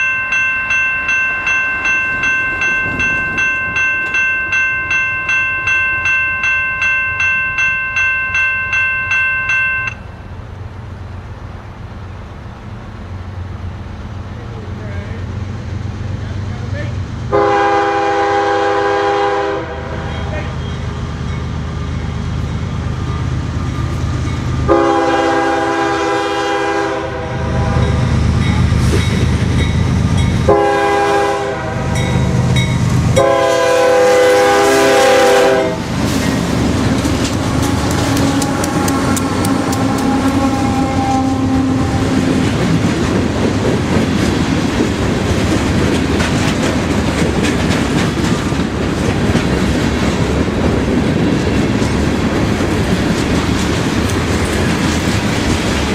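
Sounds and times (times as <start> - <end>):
locomotive engine rumble: 0.0 - 55.9
locomotive air horn blasts: 17.3 - 20.6, 24.7 - 28.1, 30.5 - 32.4, 33.2 - 35.9, 37.5 - 42.2
train wheels clicking over rail joints: 28.0 - 30.6, 35.8 - 55.9.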